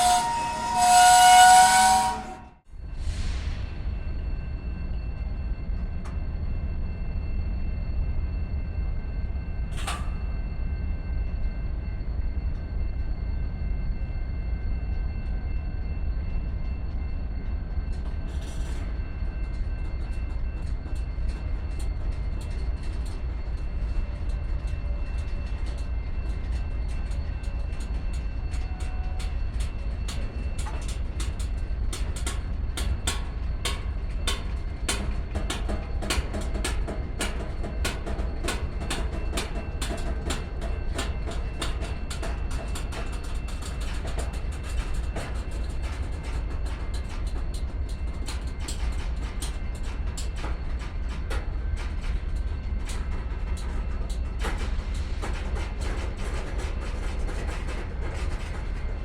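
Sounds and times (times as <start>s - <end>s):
freight train rumbling: 0.0s - 59.0s
wheels clicking over rail joints: 20.0s - 59.0s.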